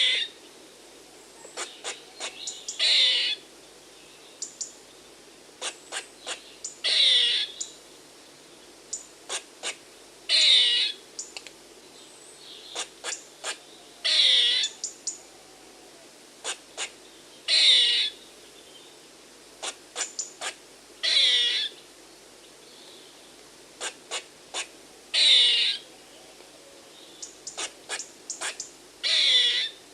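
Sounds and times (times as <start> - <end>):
squirrel alarm calls: 0.0 - 0.4, 1.5 - 3.4, 5.6 - 7.8, 8.9 - 11.3, 12.6 - 15.2, 16.4 - 18.2, 19.6 - 21.8, 23.8 - 25.9, 27.1 - 29.8.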